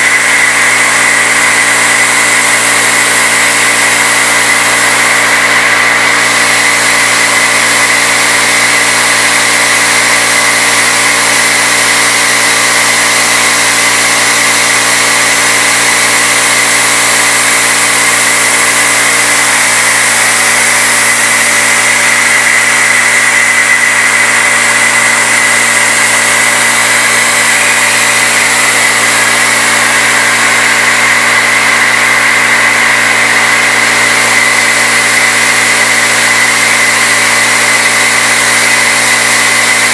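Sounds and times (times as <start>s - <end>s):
machine running noise: 0.0s - 39.9s
milling machine cutting whine: 0.0s - 39.9s.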